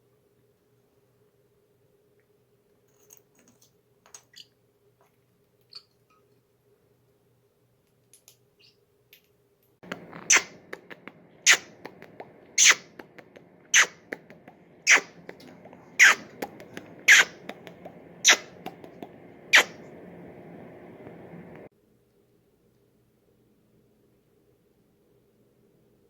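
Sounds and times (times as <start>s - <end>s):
parrot squeaking: 10.1s - 11.9s, 12.6s - 13.0s, 13.7s - 14.2s, 14.8s - 15.3s, 16.0s - 17.5s, 18.2s - 18.7s, 19.5s - 19.8s.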